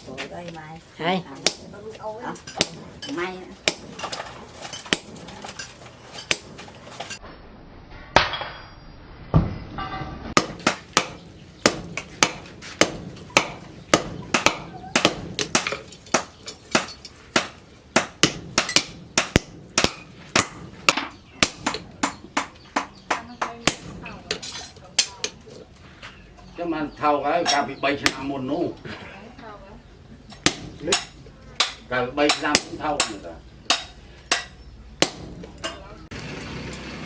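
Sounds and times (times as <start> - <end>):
hammer striking steel: 1.4 - 7.2, 10.4 - 25.1, 30.4 - 35.9.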